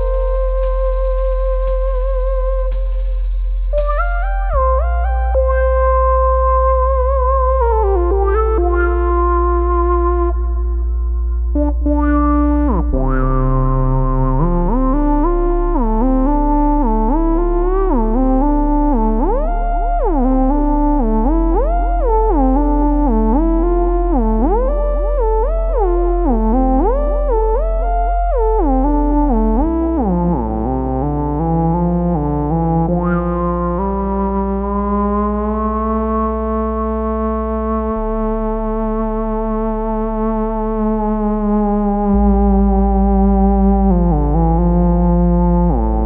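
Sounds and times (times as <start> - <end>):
low bass note: 0.0 - 5.1.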